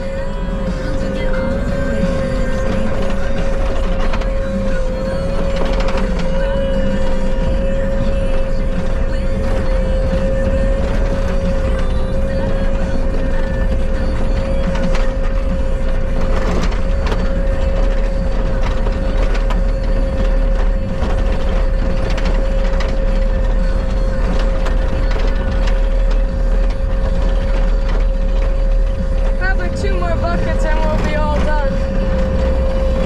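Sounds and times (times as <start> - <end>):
skid steer engine rumbling: 0.0 - 33.0.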